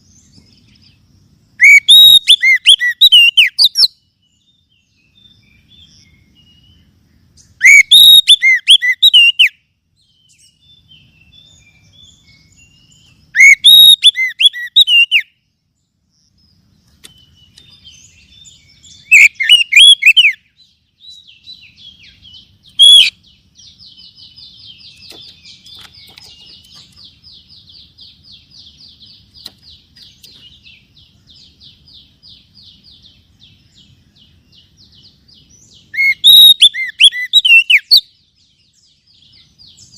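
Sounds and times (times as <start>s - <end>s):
bird whistled song phrases: 1.6s - 6.8s, 7.4s - 15.4s, 17.0s - 26.9s, 34.9s - 39.9s.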